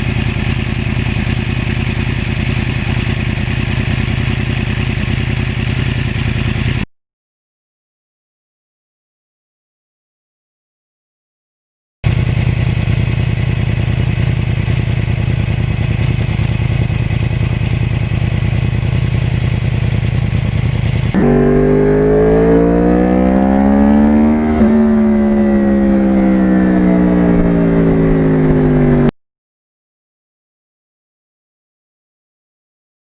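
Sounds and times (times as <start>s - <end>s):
motorcycle engine: 0.0s - 6.9s, 12.1s - 29.2s.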